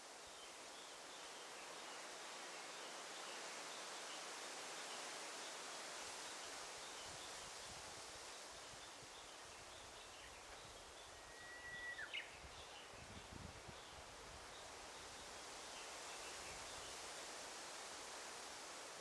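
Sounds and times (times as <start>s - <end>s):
bird whistle call: 11.2s - 12.2s.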